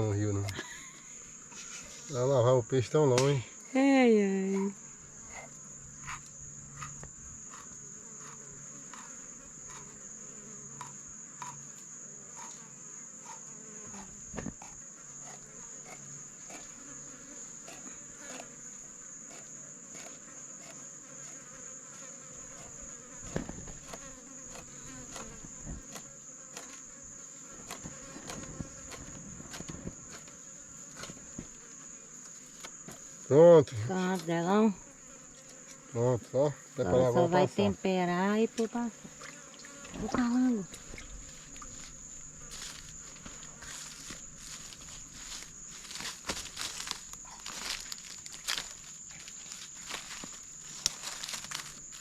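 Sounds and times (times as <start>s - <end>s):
high-pitched insect drone: 32.5s - 52.0s.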